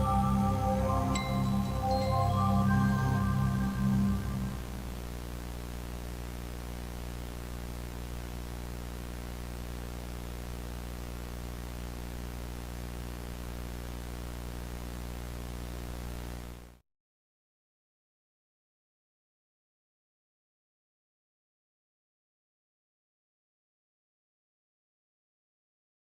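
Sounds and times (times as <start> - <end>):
low electronic hum: 0.0 - 16.8
static hiss: 0.0 - 16.8.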